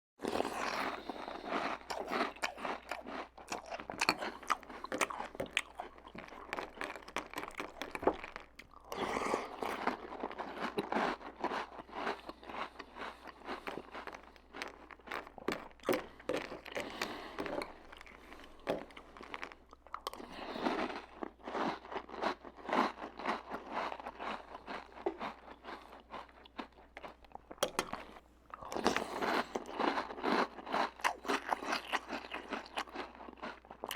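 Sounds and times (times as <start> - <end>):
crunchy cereal being chewed: 0.2 - 33.9.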